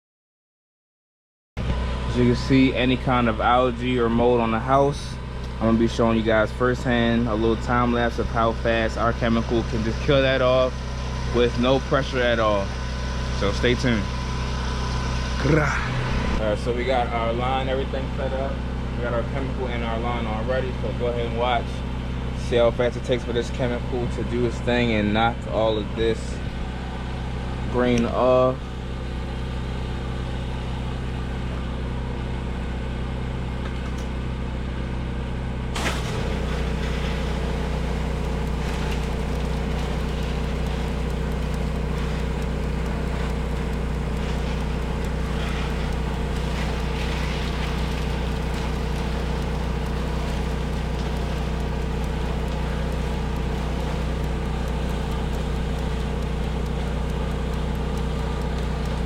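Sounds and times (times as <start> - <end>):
spray rig engine running: 1.6 - 32.3, 35.7 - 59.0
click: 38.2 - 59.0.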